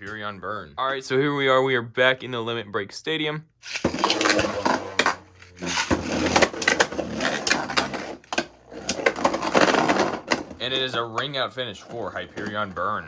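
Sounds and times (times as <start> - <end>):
spinning tops clashing: 3.6 - 10.6.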